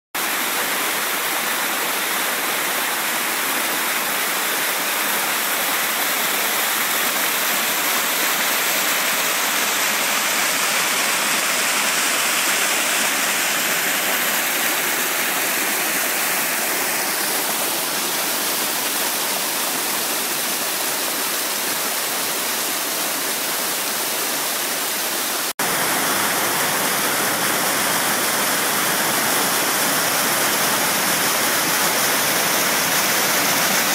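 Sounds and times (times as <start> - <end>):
small waterfall rushing: 0.2 - 33.9.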